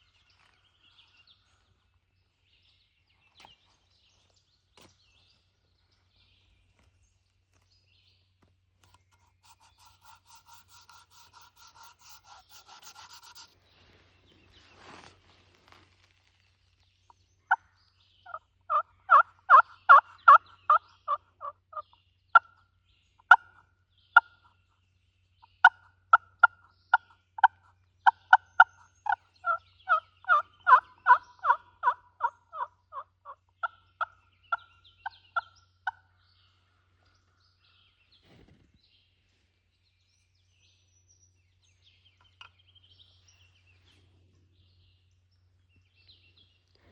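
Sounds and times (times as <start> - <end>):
turkey yelping: 18.3 - 21.5, 28.3 - 33.7.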